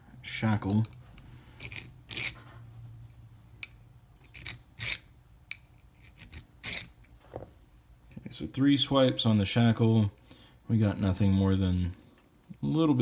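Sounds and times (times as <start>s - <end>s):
file rasping on steel: 1.6s - 2.6s, 4.2s - 5.1s, 6.0s - 7.0s.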